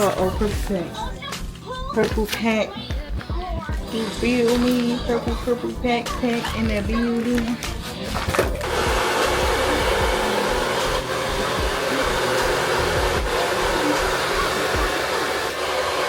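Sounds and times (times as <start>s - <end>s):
hair dryer blowing: 6.3s - 16.0s.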